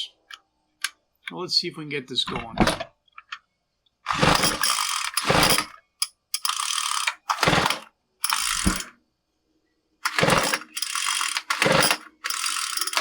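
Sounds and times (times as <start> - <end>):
engine turning over: 4.1 - 5.7, 7.0 - 8.9, 10.1 - 13.0
recoil pull-starter whirring: 4.1 - 5.8, 6.4 - 8.9, 10.0 - 13.0.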